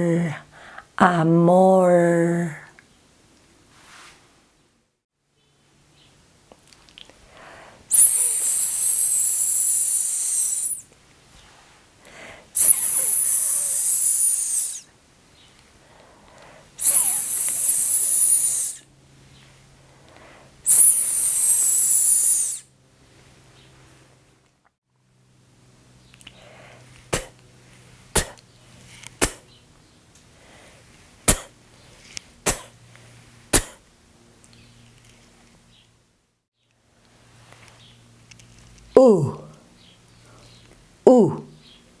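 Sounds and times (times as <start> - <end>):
person hissing: 7.9 - 10.8, 12.2 - 14.9, 16.8 - 18.8, 20.7 - 22.7, 28.2 - 28.4, 29.2 - 29.4, 31.3 - 31.5, 32.5 - 32.7, 33.6 - 33.8, 41.1 - 41.6.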